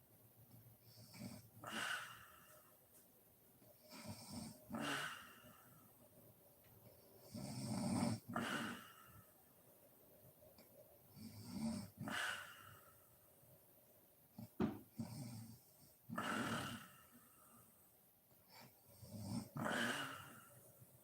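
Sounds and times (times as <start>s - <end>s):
woman snoring: 16.1s - 17.1s, 19.0s - 20.5s.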